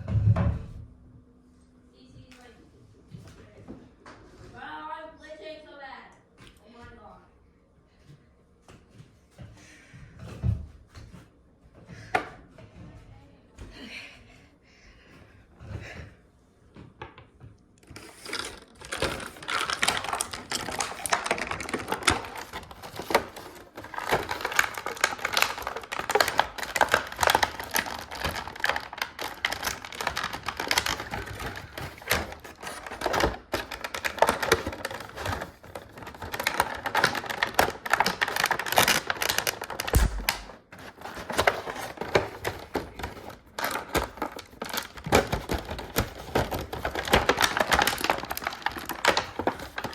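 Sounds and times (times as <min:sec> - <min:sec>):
plastic packaging clicking and crackling: 0:17.8 - 0:49.9.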